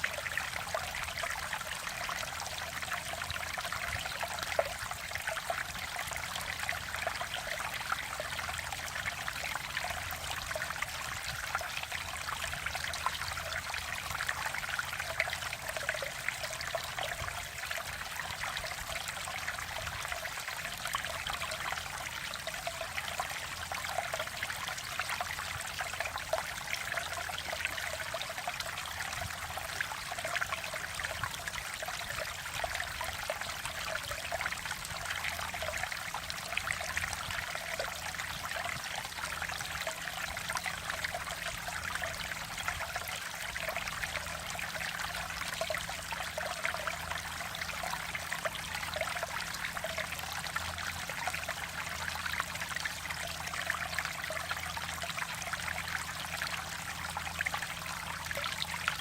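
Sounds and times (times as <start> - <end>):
stream trickling and splashing: 0.0 - 59.0.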